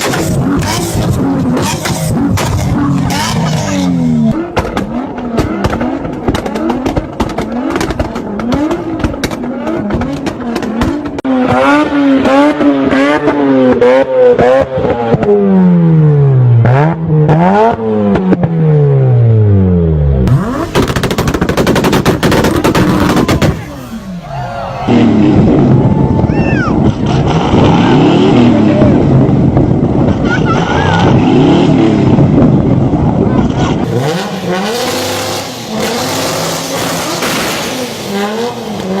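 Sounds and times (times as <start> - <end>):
car engine revving: 0.0 - 39.0
exhaust cracks and pops: 4.5 - 11.3, 20.3 - 23.9.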